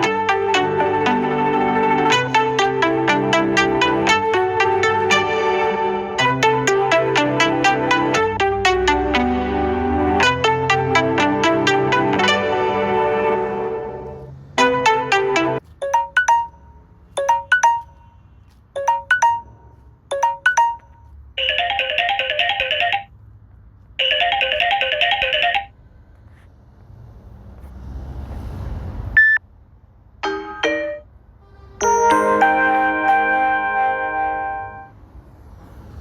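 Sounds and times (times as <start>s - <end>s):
trilling phone ring: 14.6s - 16.6s, 17.2s - 18.1s, 18.8s - 23.1s, 24.0s - 25.7s.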